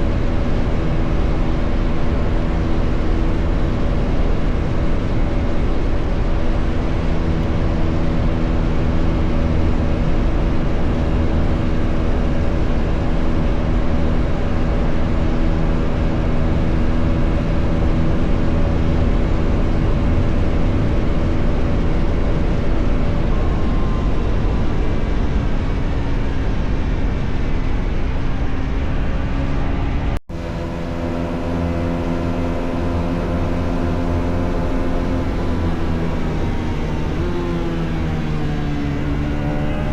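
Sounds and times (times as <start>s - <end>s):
wind rush: 0.0s - 31.2s
motorcycle engine cruising: 0.0s - 39.9s.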